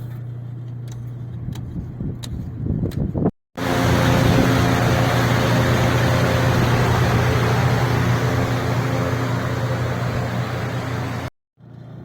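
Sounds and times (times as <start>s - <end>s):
engine idling: 3.6s - 11.3s.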